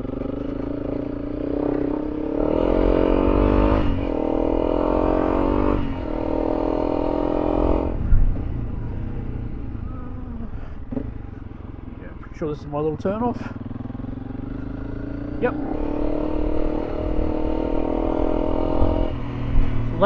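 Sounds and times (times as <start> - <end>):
motorcycle engine accelerating: 0.0 - 20.0
low wind rumble: 1.1 - 12.3.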